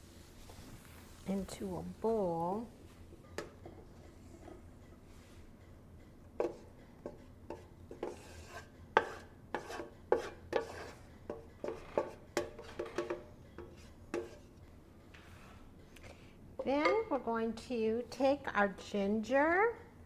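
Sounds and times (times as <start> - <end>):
utensil scraping a pan: 6.4 - 14.6.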